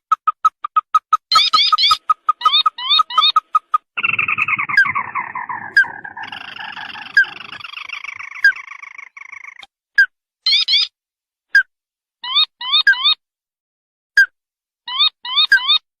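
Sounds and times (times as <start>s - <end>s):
quick repeated bird notes: 0.0s - 10.9s
bird trilling: 0.4s - 9.7s
sharp upward bird notes: 1.3s - 9.6s.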